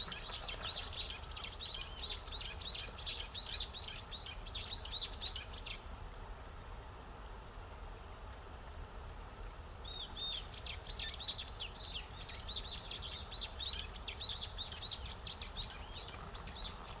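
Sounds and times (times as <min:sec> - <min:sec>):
sparrows chirping: 0:00.0 - 0:05.8, 0:09.8 - 0:17.0.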